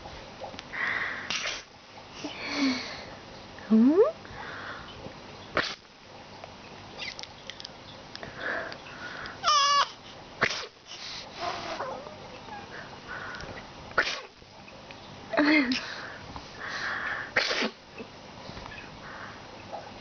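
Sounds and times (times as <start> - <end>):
person sneezing: 1.3 - 1.7, 10.4 - 10.8, 14.0 - 14.3, 17.4 - 17.8
baby squealing with laughter: 9.4 - 10.0.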